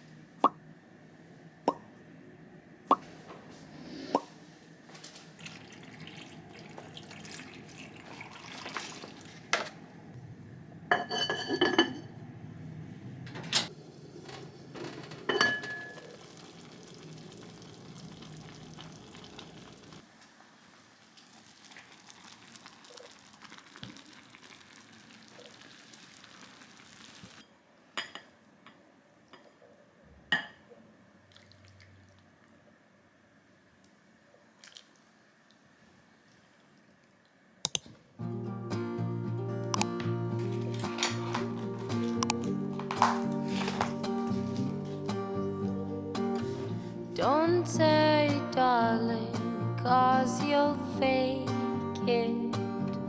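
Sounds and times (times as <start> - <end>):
dishes and utensils clinking: 10.9 - 12.2, 15.2 - 16.1, 42.8 - 44.2.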